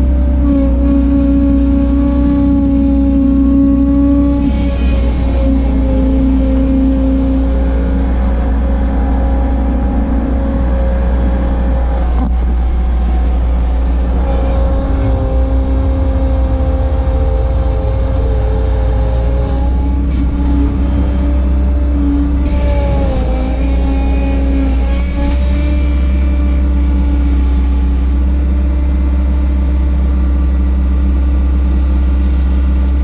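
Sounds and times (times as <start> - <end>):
skid steer engine running: 0.0 - 33.0.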